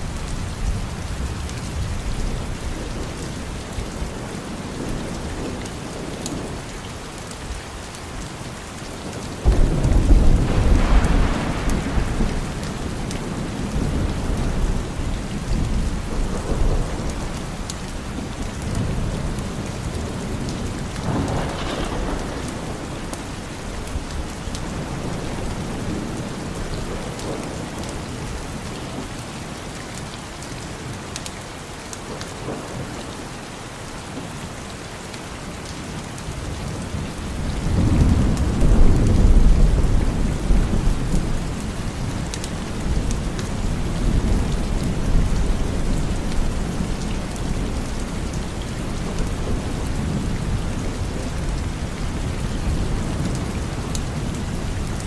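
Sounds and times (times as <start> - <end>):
steady rain: 0.0 - 55.0
thunder rumbling: 9.4 - 29.0, 36.6 - 55.0.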